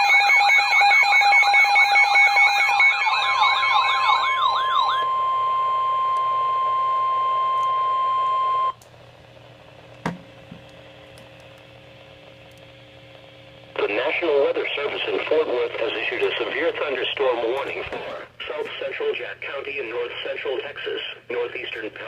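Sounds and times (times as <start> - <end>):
steady alarm tone: 0.0 - 8.8
faint hum: 2.6 - 22.0
click: 12.5 - 13.2.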